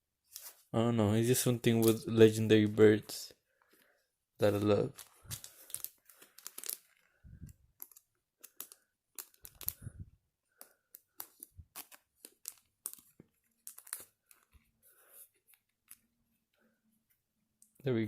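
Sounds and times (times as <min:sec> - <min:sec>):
crinkly plastic packaging: 0:04.5 - 0:14.8.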